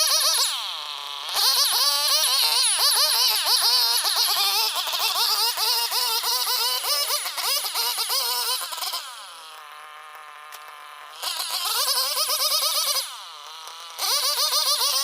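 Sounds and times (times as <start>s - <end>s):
chainsaw running at high revs: 0.0s - 15.0s.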